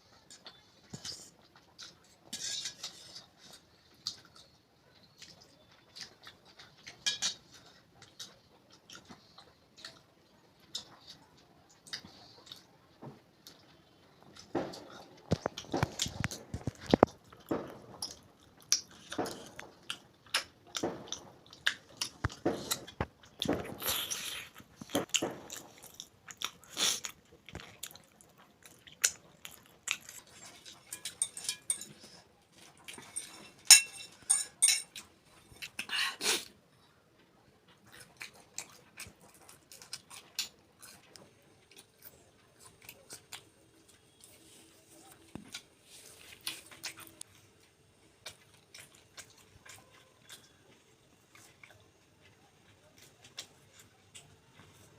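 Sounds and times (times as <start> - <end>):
person chewing crunchy food: 0.2 - 12.7, 13.4 - 36.6, 37.7 - 54.9
wet mouth noises: 21.2 - 28.0.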